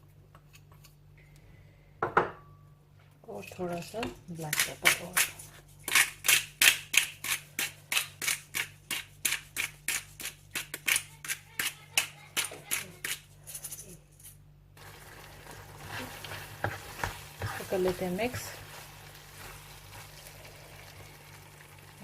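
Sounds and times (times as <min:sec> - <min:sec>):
soft hiss from pan: 0:14.8 - 0:22.0
pepper grinder scratchy strokes: 0:15.8 - 0:20.1.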